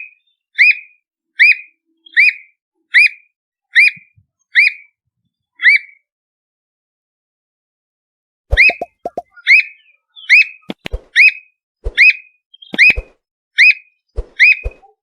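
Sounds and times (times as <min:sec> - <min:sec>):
bird whistling: 0:08.5 - 0:14.9.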